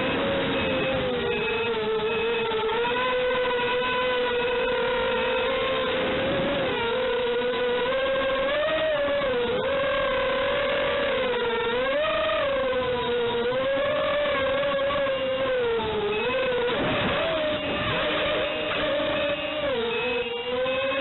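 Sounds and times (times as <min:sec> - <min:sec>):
drone motors whining: 0:00.0 - 0:21.0.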